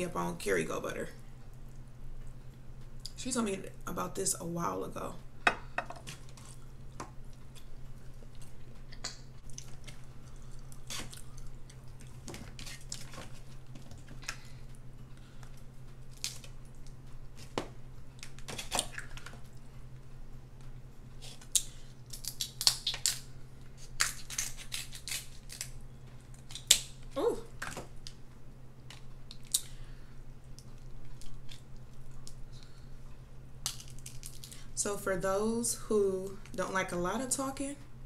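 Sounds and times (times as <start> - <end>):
steady low hum: 0.0 - 38.0
wet chewing: 6.0 - 17.6
crab shell cracking: 16.1 - 17.5, 21.2 - 28.2, 28.9 - 29.8, 33.6 - 34.6.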